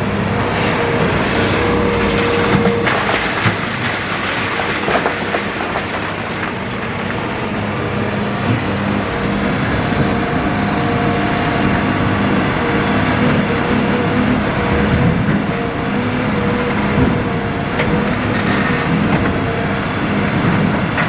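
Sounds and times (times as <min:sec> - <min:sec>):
excavator diesel engine: 0:00.0 - 0:21.0
hydraulic whine: 0:06.6 - 0:20.2
high steady whine: 0:07.8 - 0:12.3.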